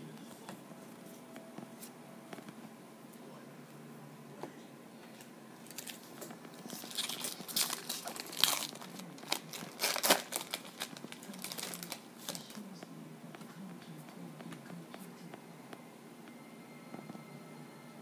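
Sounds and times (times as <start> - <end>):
wrapper tearing and crinkling: 5.6 - 12.6.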